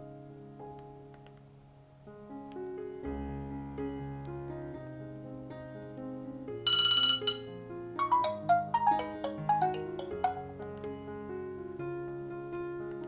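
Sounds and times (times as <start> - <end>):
soft piano music: 0.0 - 13.0
bright mallet notes: 6.7 - 10.6
electronic ringing tone: 6.7 - 10.6.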